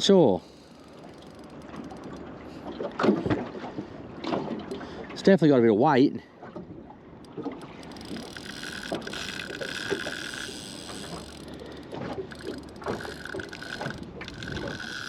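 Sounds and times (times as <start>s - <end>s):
fishing reel gears whirring: 0.4s - 2.6s, 7.2s - 15.0s.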